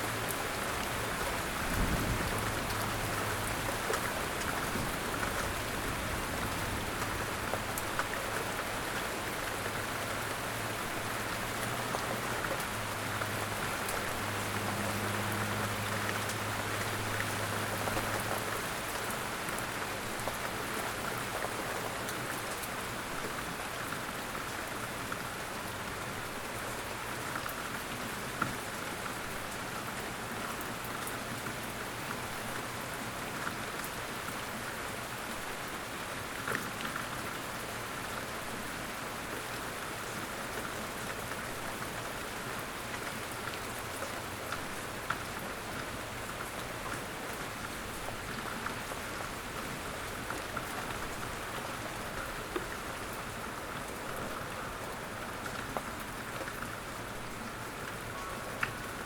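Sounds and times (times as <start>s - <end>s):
steady rain patter: 0.0s - 59.0s.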